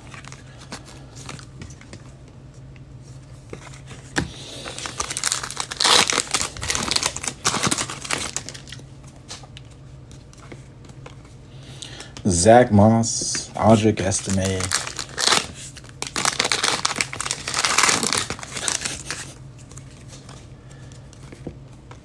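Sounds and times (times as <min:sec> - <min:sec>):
cards rustling and clicking: 0:03.5 - 0:11.3, 0:13.2 - 0:22.0
card pack wrappers crinkling: 0:03.6 - 0:10.3, 0:13.2 - 0:20.4.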